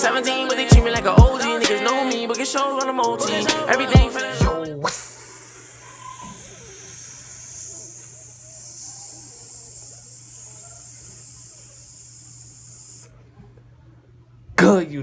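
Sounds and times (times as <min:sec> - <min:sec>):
steady static hiss: 0:05.0 - 0:13.1.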